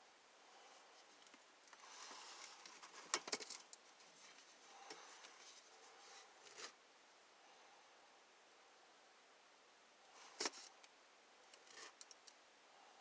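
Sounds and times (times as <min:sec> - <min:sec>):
soft handling rustling: 0:00.8 - 0:06.8.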